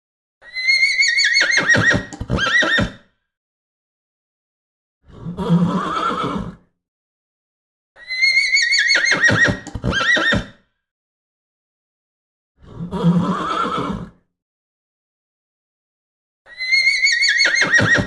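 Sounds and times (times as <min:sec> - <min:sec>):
horse neighing: 0:00.6 - 0:03.0, 0:05.2 - 0:06.6, 0:08.0 - 0:10.5, 0:12.8 - 0:14.2, 0:16.6 - 0:18.0.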